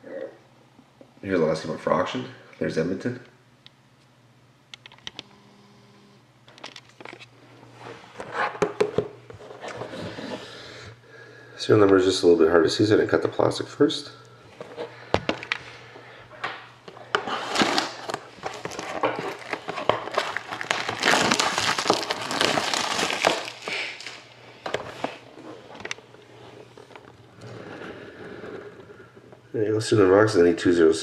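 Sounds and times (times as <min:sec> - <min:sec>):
plastic shrink wrap crinkling: 0:16.8 - 0:28.0.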